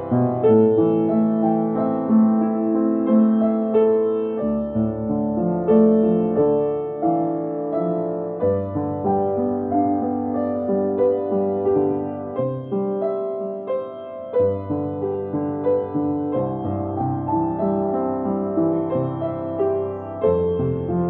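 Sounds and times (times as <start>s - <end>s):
slow gentle piano melody: 0.0s - 21.0s.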